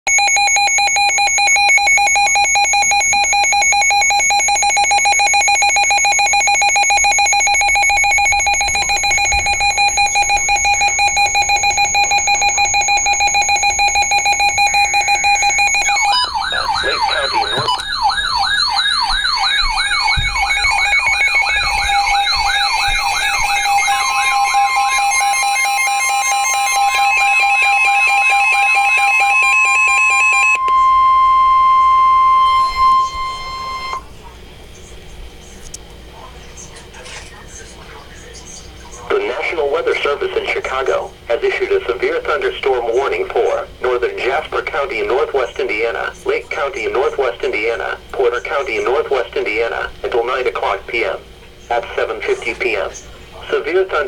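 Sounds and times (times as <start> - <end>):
pulsing high alarm tone: 0.1 - 34.1
warbling siren tone: 2.0 - 34.1.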